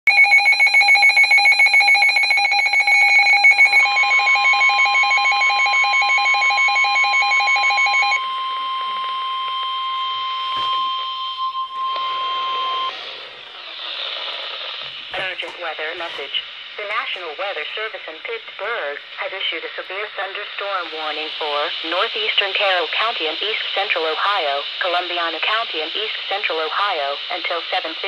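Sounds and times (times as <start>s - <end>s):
steady alarm tone: 0.1s - 14.2s.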